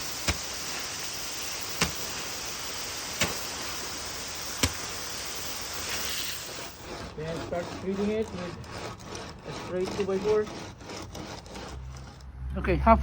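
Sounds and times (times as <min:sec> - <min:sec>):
water spraying from a hose: 0:00.0 - 0:06.8.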